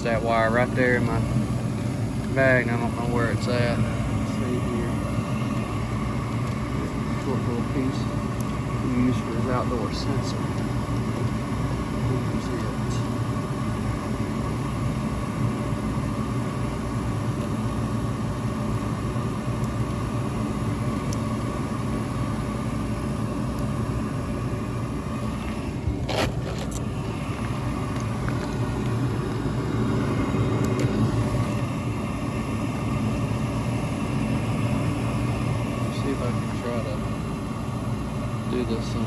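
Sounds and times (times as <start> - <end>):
steady tones: 0.0 - 14.9
machinery humming: 0.0 - 39.0.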